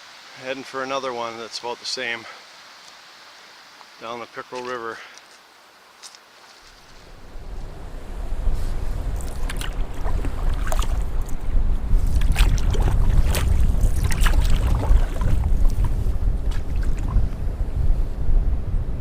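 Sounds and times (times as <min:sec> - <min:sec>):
wind buffeting microphone: 0:06.9 - 0:19.0.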